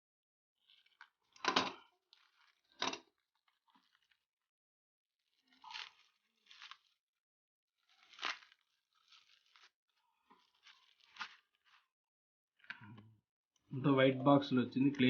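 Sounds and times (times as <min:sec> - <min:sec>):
packaging rustling and scraping: 0:02.0 - 0:04.3, 0:05.2 - 0:07.0, 0:07.8 - 0:11.9.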